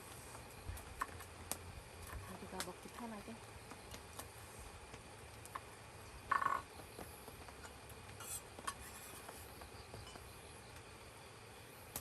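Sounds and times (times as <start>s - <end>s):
frog croaking: 6.3s - 6.7s.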